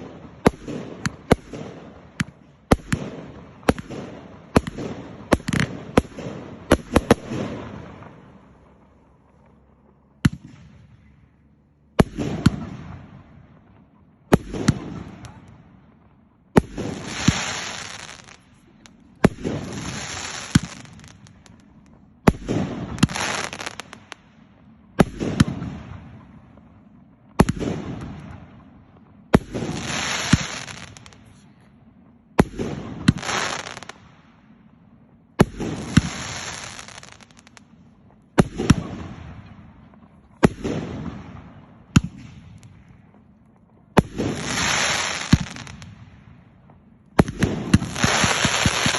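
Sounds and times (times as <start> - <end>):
fireworks hiss and crackle: 0.0 - 10.5, 16.6 - 24.3, 29.3 - 31.7, 32.4 - 34.3, 35.4 - 43.3, 44.0 - 46.2, 47.2 - 48.9
fireworks bursting: 0.0 - 31.7, 32.3 - 34.3, 35.3 - 48.9.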